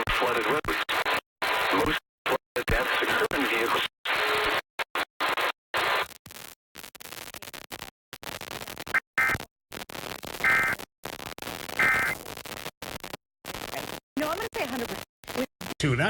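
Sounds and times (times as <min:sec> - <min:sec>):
crackly radio static: 0:00.0 - 0:16.0
warbling two-tone data bursts: 0:11.8 - 0:12.2.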